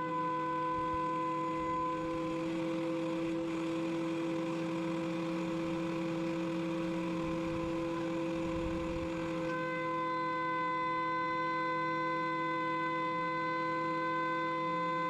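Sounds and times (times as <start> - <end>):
thickness planer milling boards: 0.0 - 12.0.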